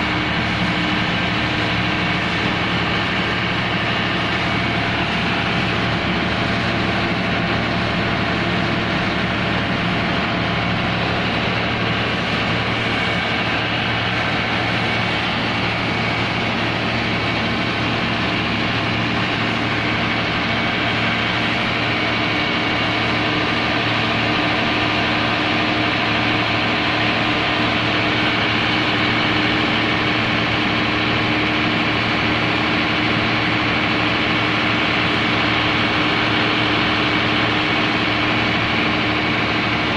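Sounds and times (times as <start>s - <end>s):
diesel generator engine running: 0.0s - 39.9s.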